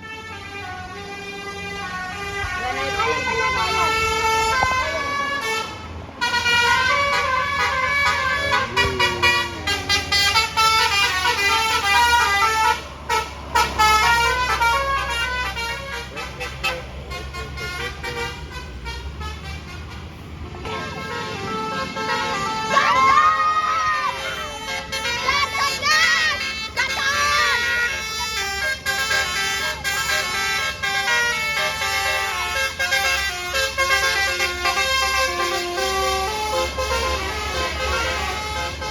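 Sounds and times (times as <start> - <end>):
musical air horn tune: 0.0 - 23.2
bus engine running: 0.0 - 38.9.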